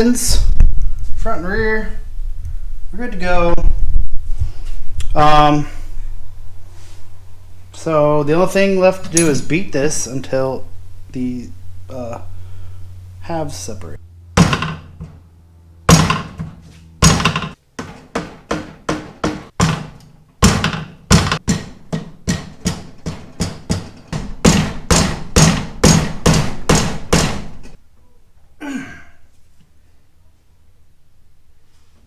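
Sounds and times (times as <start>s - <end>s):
hammer striking metal case: 14.4s - 15.2s, 15.9s - 27.8s.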